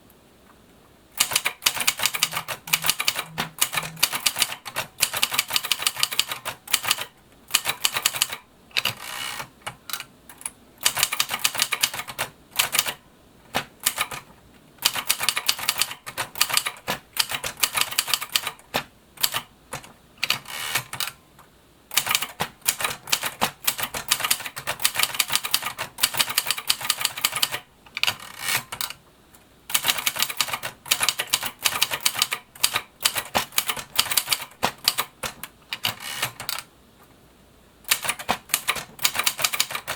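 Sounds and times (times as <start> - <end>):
typewriter key strikes: 1.2 - 9.0, 10.4 - 21.1, 29.7 - 36.6, 37.9 - 39.9.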